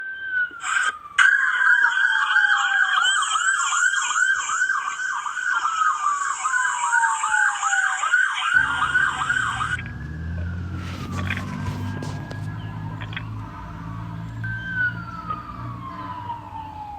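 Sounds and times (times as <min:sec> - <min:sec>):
police siren yelp: 0:00.0 - 0:16.9
siren wail: 0:00.0 - 0:16.9
low engine rumble: 0:08.6 - 0:16.9.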